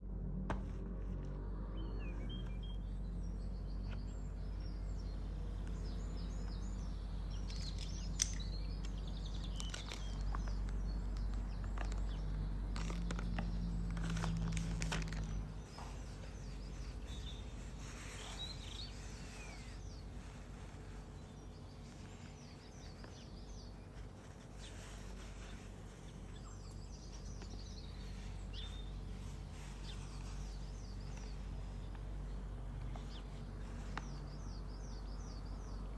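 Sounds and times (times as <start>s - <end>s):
steady low hum: 0.0s - 35.9s
small birds chirping: 0.7s - 35.9s
sharp clicks: 7.3s - 15.5s.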